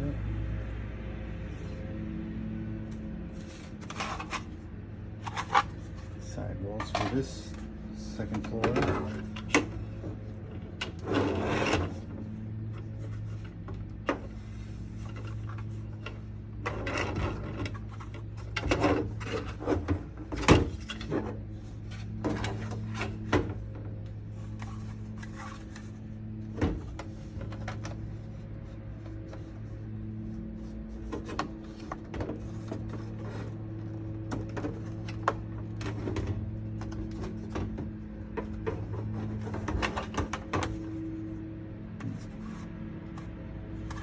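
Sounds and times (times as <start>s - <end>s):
low hum: 0.0s - 44.0s
plastic rubbing and scraping: 2.8s - 44.0s
plastic panels clicking and snapping: 34.2s - 41.0s.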